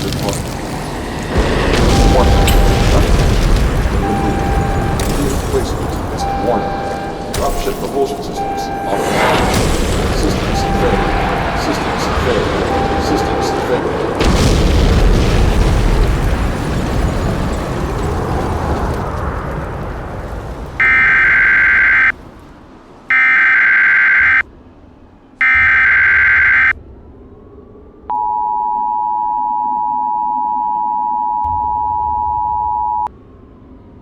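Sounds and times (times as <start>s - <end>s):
explosion rumble: 0.0s - 22.6s
two-tone alert signal: 1.8s - 3.2s, 4.0s - 5.6s, 6.2s - 9.4s, 10.4s - 11.4s, 12.7s - 13.7s, 20.8s - 22.1s, 23.1s - 24.4s, 25.4s - 26.7s, 28.1s - 33.1s
warbling data signal bursts: 1.8s - 3.4s, 4.0s - 9.3s, 10.2s - 12.0s, 25.4s - 26.7s.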